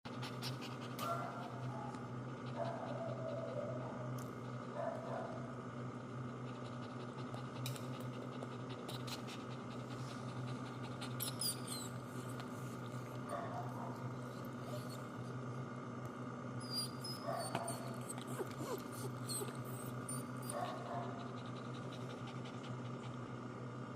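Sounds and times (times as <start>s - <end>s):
steady hum: 0.1s - 23.9s
dog squeaking: 11.0s - 12.3s, 16.6s - 21.0s.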